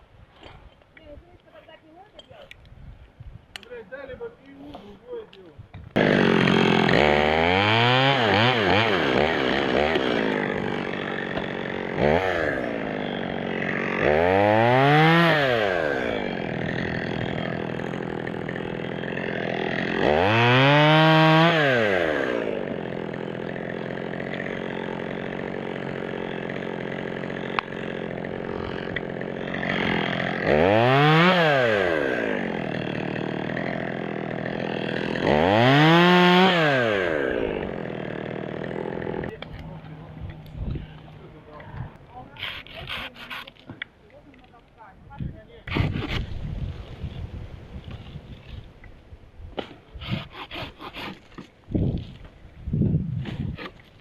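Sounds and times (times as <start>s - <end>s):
chainsaw revving: 6.0s - 43.5s.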